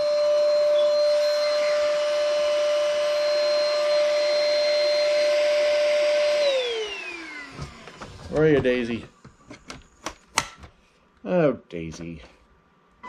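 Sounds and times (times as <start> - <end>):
vacuum motor spinning down: 0.0 - 9.1
vacuum motor whining: 0.0 - 10.2.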